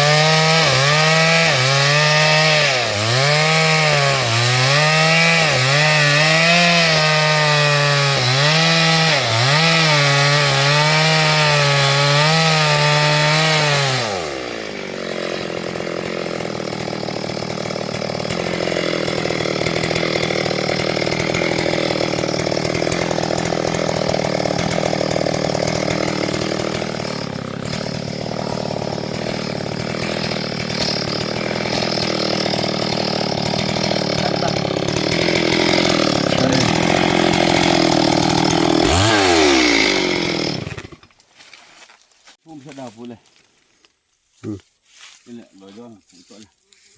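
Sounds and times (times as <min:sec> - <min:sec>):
chainsaw cutting wood: 0:00.0 - 0:41.5.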